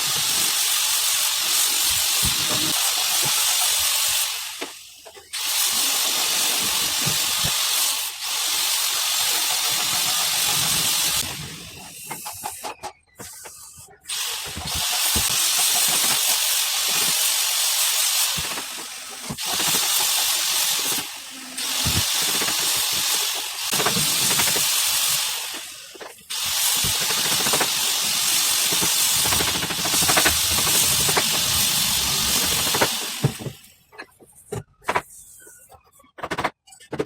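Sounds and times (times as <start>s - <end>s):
compressed air hissing: 0.0s - 12.5s, 26.4s - 33.6s.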